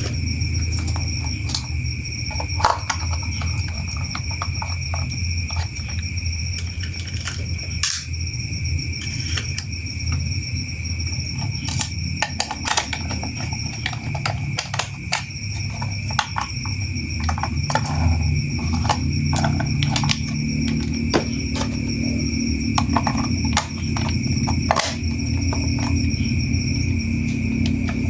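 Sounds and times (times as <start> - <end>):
faint high whine: 0.0 - 28.0
steady hum: 0.0 - 28.0
plastic toy pieces clicking: 11.5 - 20.9.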